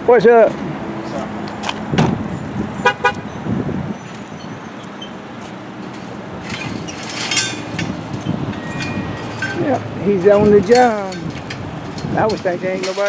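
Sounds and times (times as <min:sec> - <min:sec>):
traffic noise: 0:00.0 - 0:13.0
clatter with high ringing notes: 0:05.9 - 0:09.8.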